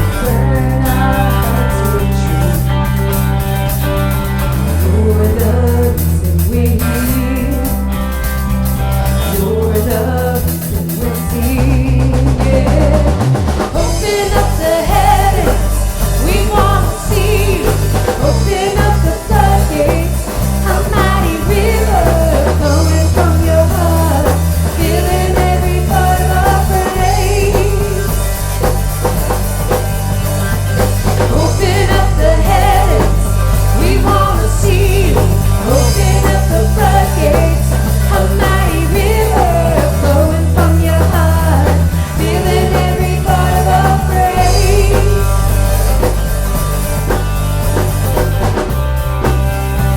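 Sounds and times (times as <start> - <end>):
person singing: 0.0 - 3.0, 4.6 - 7.9, 9.2 - 28.3, 31.1 - 46.1
bass notes: 0.0 - 49.9
drum kit: 0.0 - 49.9.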